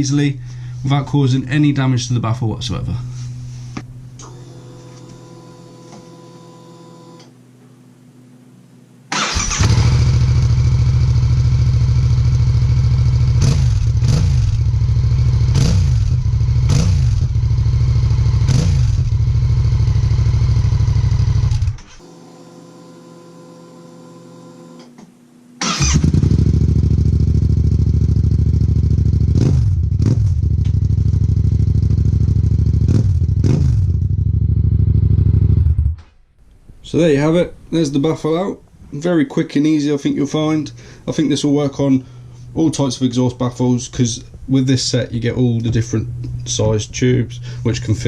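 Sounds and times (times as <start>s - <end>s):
motorcycle engine idling and revving: 9.6s - 21.9s, 25.8s - 36.0s.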